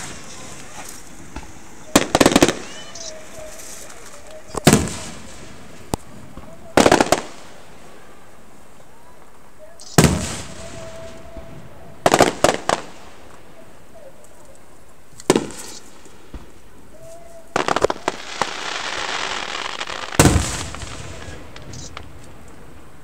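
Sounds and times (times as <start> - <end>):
firework bang: 0.0 - 7.7, 9.8 - 13.3, 15.3 - 16.6, 17.6 - 22.5
crackling fizzling burst: 0.0 - 23.0
fireworks cracks: 0.0 - 23.0.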